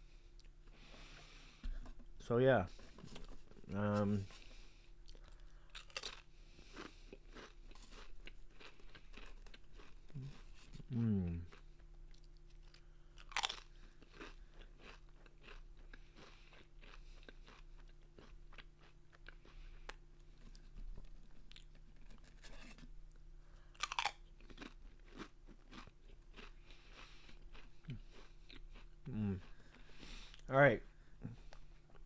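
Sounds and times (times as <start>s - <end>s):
chewing crunchy crisps: 2.7s - 32.0s.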